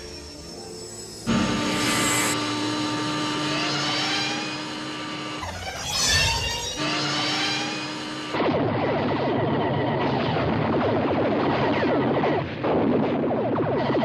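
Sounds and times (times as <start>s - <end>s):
bright sound effect burst: 0.0s - 5.0s
rising whistling tones: 0.0s - 6.9s.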